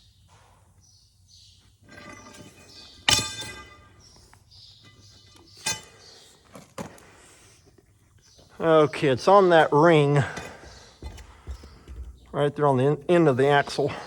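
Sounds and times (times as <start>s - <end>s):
pry bar clanking on metal: 1.8s - 6.3s
sharp metallic knocks: 1.9s - 6.2s.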